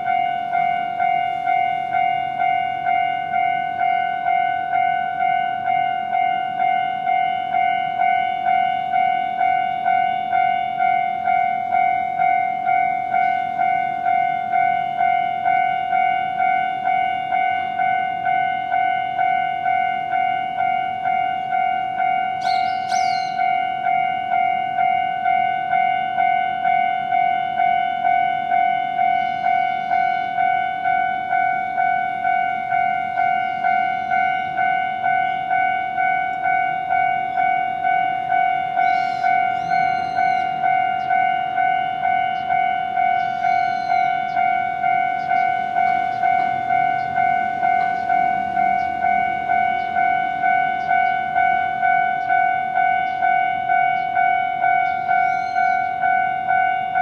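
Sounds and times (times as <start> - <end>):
level crossing warning bell: 0.0 - 57.0.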